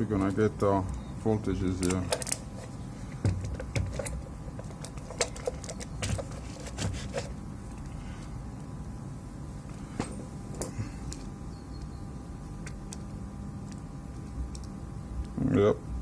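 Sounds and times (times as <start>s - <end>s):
faint steady hum: 0.0s - 16.0s
test probes clicking and tapping: 3.1s - 6.3s, 12.6s - 15.4s.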